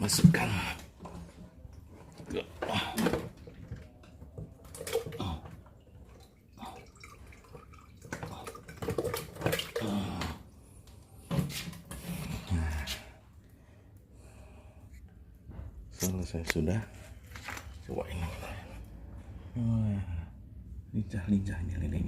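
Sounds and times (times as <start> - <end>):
water splashing in plastic jug: 2.0 - 10.5.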